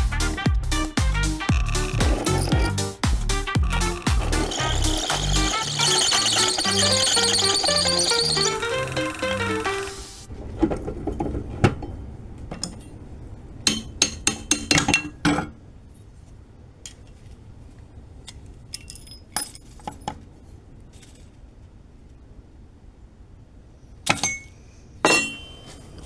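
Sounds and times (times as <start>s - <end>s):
steel parts clinking: 1.5s - 2.8s, 3.6s - 10.1s.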